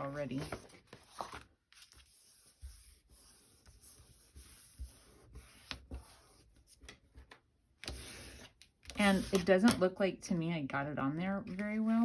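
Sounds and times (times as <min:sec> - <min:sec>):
paper rubbing and scratching: 0:00.0 - 0:06.6.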